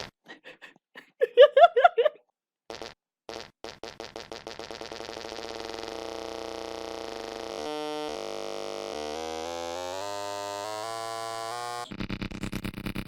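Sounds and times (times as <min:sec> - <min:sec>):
fart sounds: 0:00.0 - 0:00.2, 0:02.7 - 0:13.0
steady buzzing tone: 0:02.7 - 0:13.0.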